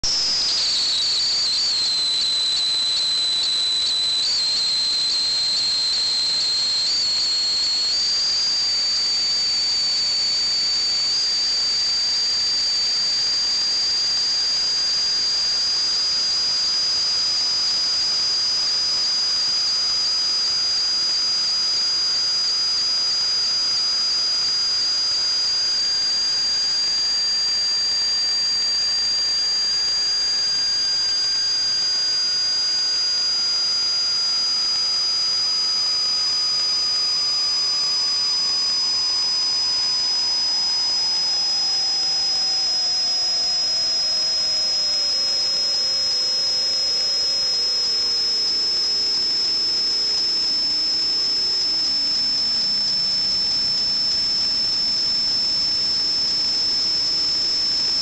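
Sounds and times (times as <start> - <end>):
pipe whistling with hiss: 0.0 - 58.0.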